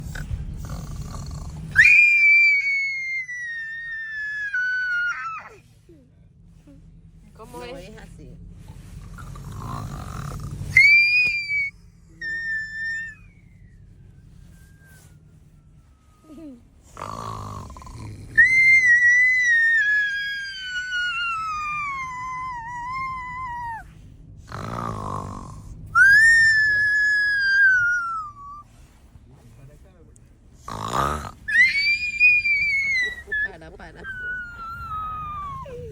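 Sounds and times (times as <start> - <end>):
person imitating snoring: 0.0 - 1.8, 9.2 - 10.7, 16.9 - 18.6, 24.5 - 26.2, 30.6 - 31.6
falling snore whistle: 0.1 - 5.5, 9.2 - 23.8, 24.5 - 28.6, 30.7 - 33.4.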